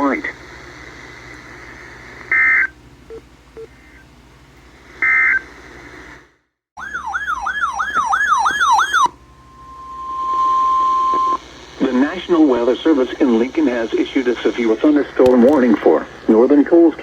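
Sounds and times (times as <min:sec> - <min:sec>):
radio hiss: 0:00.0 - 0:02.7, 0:04.7 - 0:06.3, 0:09.6 - 0:17.0
shrill two-tone warbles: 0:06.8 - 0:11.4
siren-like yelp: 0:06.8 - 0:11.4
steady single attention tone: 0:08.6 - 0:12.6.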